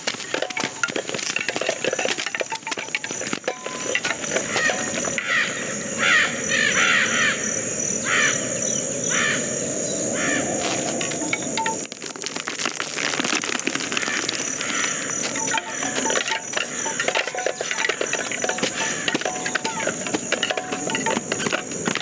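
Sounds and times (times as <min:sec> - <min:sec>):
crackling clicking rustles: 0:00.0 - 0:05.5, 0:10.6 - 0:22.0.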